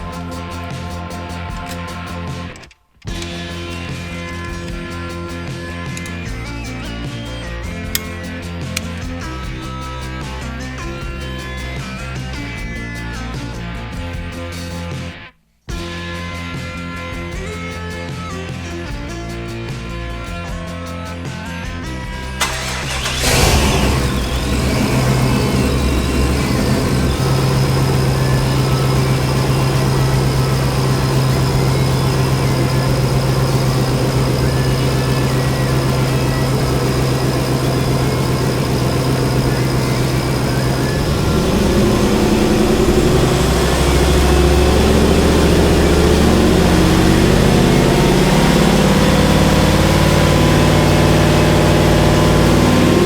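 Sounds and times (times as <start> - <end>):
engine running: 22.4 - 53.0.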